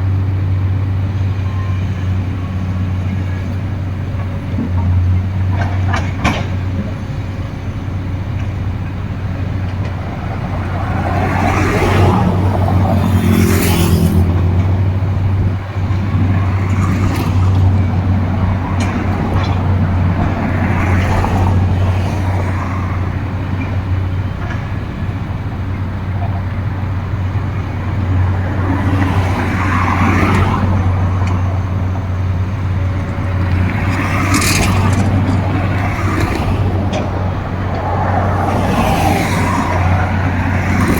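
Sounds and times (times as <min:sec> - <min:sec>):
excavator diesel engine running: 0:00.0 - 0:40.9.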